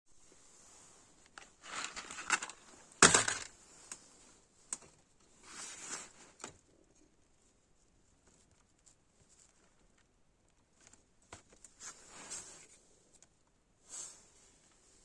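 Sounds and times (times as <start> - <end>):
rustling and clicking: 1.2 - 4.1.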